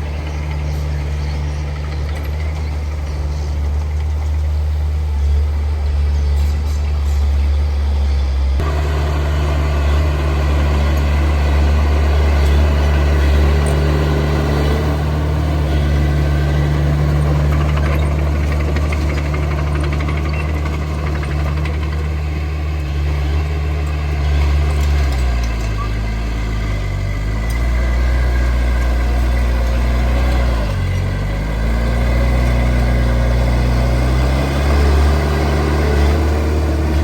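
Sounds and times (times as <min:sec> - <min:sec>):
heavy diesel engine running: 0:00.0 - 0:37.0.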